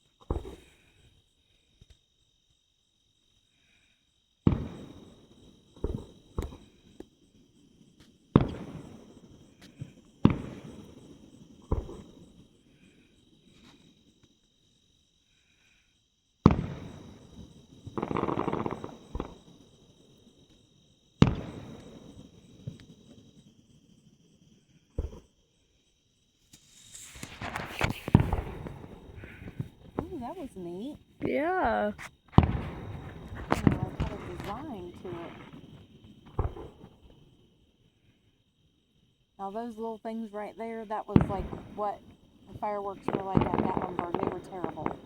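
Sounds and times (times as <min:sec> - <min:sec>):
insect trill: 0:00.0 - 0:45.0
fireworks booming: 0:00.3 - 0:00.7, 0:04.4 - 0:07.2, 0:08.0 - 0:12.8, 0:16.5 - 0:20.0, 0:21.2 - 0:23.4, 0:25.0 - 0:25.3, 0:26.5 - 0:37.4, 0:40.6 - 0:45.0
fireworks crackling: 0:04.5 - 0:14.3, 0:16.5 - 0:24.0, 0:26.4 - 0:37.5, 0:39.4 - 0:45.0.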